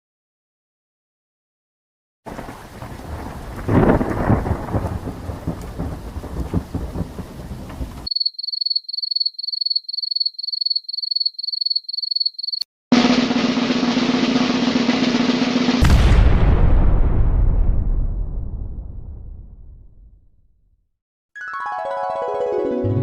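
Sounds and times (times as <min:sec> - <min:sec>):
thunder-like rumbling: 0:02.3 - 0:08.1, 0:13.8 - 0:20.2.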